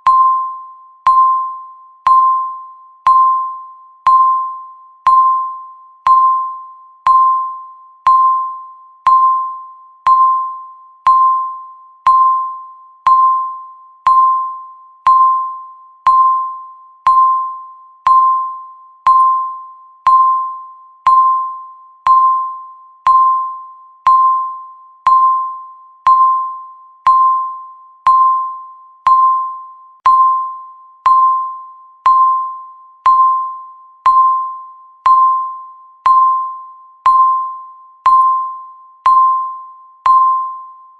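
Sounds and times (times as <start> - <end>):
electronic timer beeps: 0.0 - 40.9.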